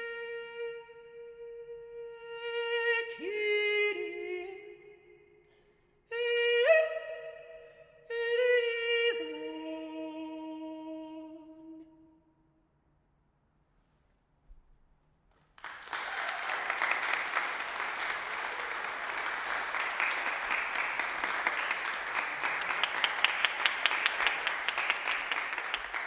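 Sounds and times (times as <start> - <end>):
audience applause: 15.6 - 26.0.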